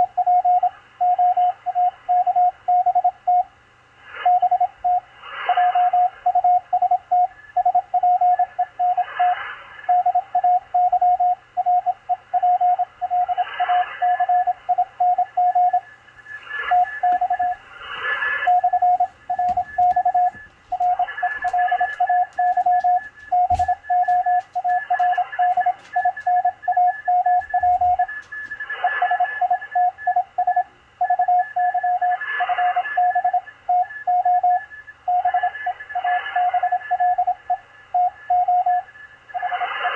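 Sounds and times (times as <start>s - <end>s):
faint higher morse signal: 9.9s - 39.6s
morse code tone: 10.0s - 35.6s
radio static rushes: 16.1s - 29.2s.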